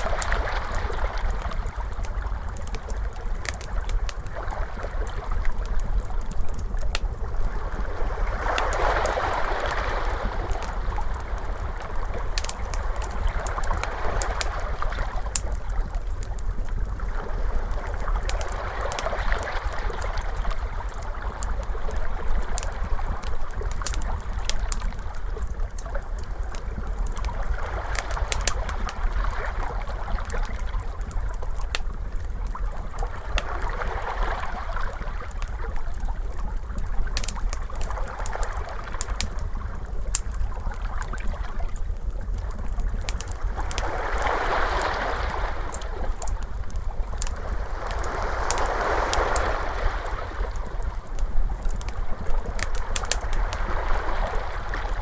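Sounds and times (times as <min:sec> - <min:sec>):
wood fire crackling: 0:00.0 - 0:55.0
ocean waves washing in: 0:07.4 - 0:15.5, 0:43.5 - 0:55.0.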